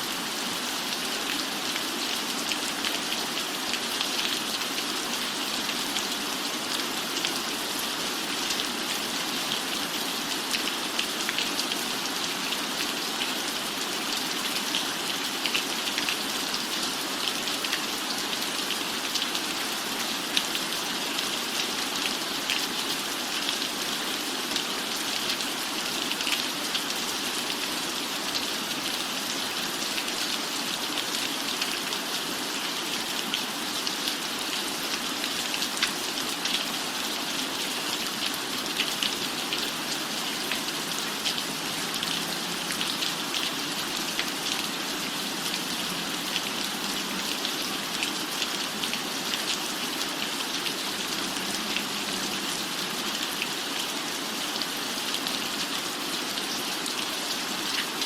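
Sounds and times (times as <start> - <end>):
rain on a roof: 0.0 - 58.0.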